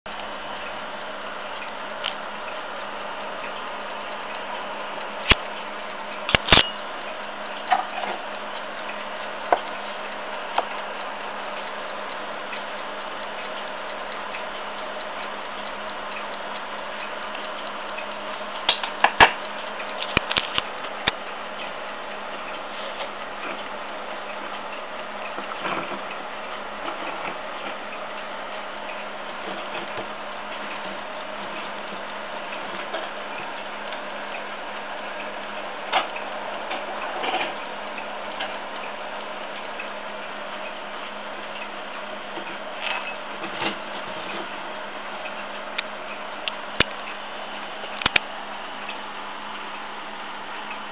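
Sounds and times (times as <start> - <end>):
alarm clocks ticking: 0.1 - 50.9
sharp clicks: 6.2 - 7.7, 17.0 - 21.7, 47.9 - 48.3.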